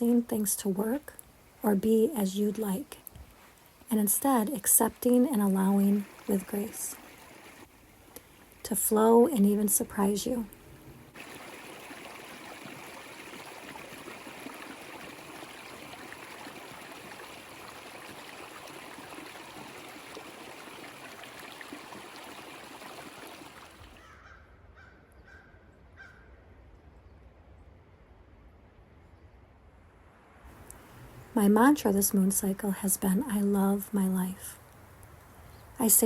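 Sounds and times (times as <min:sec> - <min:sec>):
stream rushing: 0:05.0 - 0:08.6, 0:11.0 - 0:24.0.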